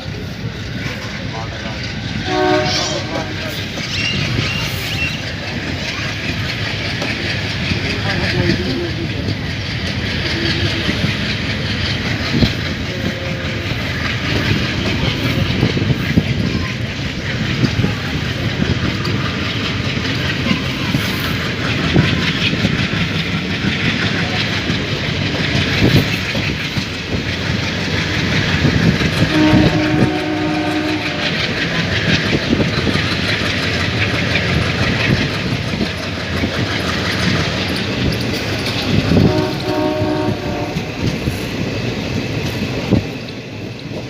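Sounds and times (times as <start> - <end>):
train rumble: 0.0 - 44.0
wheels clattering over rail joints: 0.0 - 44.0
train horn: 2.2 - 3.6, 29.2 - 31.6, 39.1 - 41.0.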